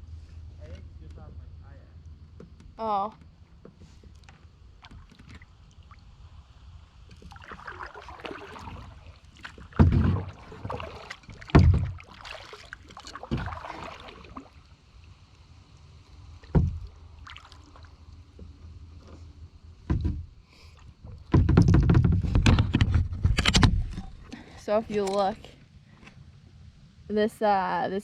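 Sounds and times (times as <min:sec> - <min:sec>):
paddle splashing water: 0:02.4 - 0:06.4, 0:07.0 - 0:25.3
heavy knocks on kayak hull: 0:08.5 - 0:12.3, 0:16.4 - 0:17.0, 0:19.8 - 0:20.4, 0:21.0 - 0:24.2.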